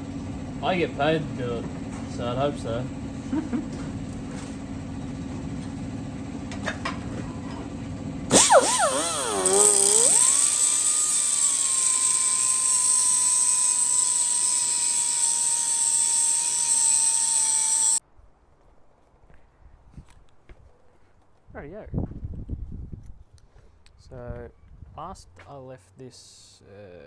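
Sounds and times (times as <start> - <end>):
high-speed grinder whining: 8.3 - 18.0.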